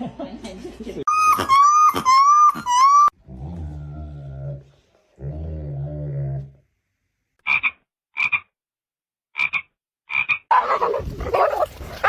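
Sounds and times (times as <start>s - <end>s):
dog growling: 3.2s - 6.6s
raspy croak-like calls: 7.4s - 8.5s, 9.3s - 10.7s.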